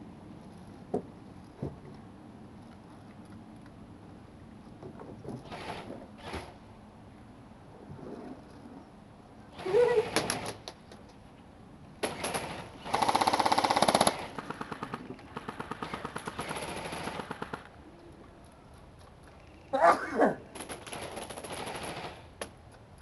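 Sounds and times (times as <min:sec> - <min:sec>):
airsoft rifles firing bursts: 0:12.0 - 0:17.7, 0:20.6 - 0:22.3.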